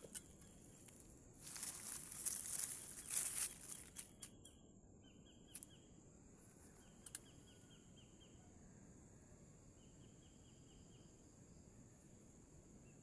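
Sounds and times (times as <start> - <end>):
insects chirping: 0.0 - 8.4.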